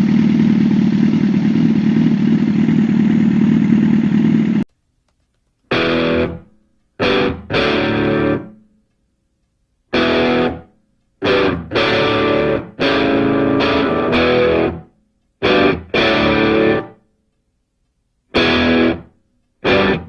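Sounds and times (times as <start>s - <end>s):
distorted electric guitar riff: 5.7s - 8.6s, 9.9s - 17.0s, 18.3s - 20.0s.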